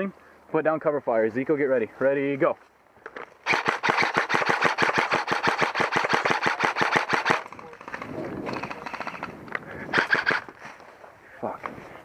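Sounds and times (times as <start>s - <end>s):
airsoft rifle full-auto burst: 3.4s - 9.3s, 9.9s - 10.5s
fainter rapid shots: 3.5s - 9.3s, 9.9s - 10.5s.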